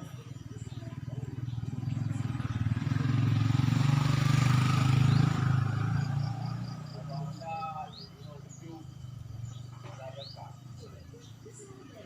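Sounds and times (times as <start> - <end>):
motorcycle engine passing by: 0.0 - 11.9.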